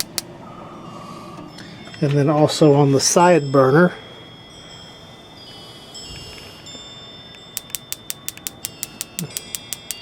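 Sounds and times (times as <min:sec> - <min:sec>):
grill igniter clicking: 0:00.0 - 0:00.3, 0:07.6 - 0:10.0.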